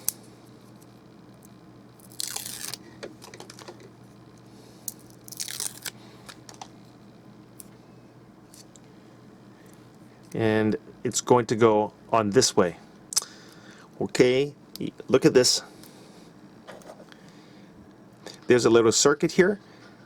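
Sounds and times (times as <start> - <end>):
film peeling off adhesive tape: 1.4 - 3.7, 4.9 - 6.4.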